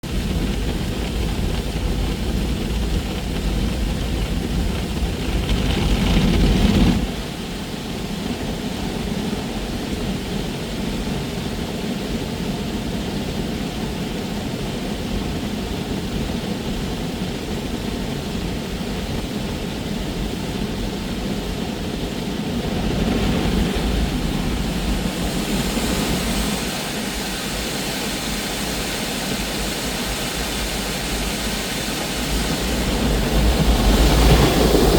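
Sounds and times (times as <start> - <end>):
heavy low rumble: 0.0 - 7.3, 20.2 - 27.1, 31.9 - 34.9
car wash machine and spray: 22.3 - 34.9
bright hiss: 24.2 - 33.7.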